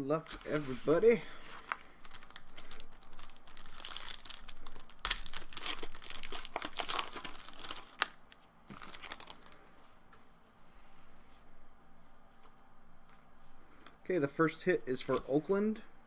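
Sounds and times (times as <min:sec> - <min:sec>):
card pack wrapper crinkling: 0:00.2 - 0:09.6.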